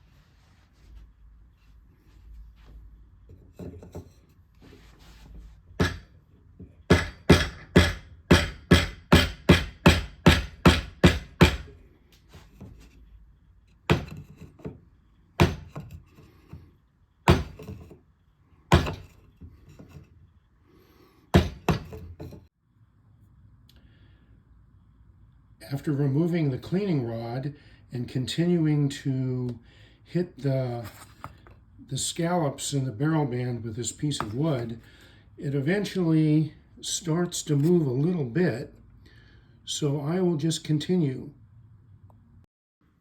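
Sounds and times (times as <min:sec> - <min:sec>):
wooden block whacking metal: 0:06.9 - 0:11.7, 0:18.7 - 0:19.1.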